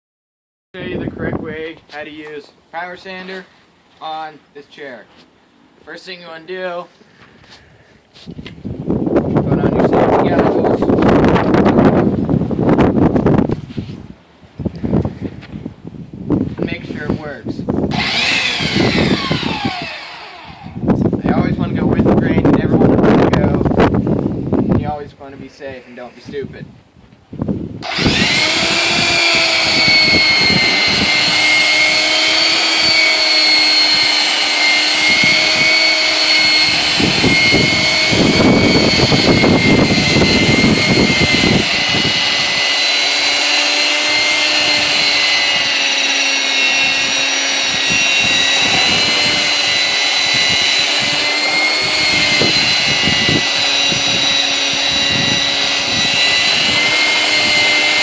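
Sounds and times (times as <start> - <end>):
belt sander motor whine: 17.9 - 21.0, 27.8 - 58.0
sanding belt rasping on wood: 27.8 - 58.0.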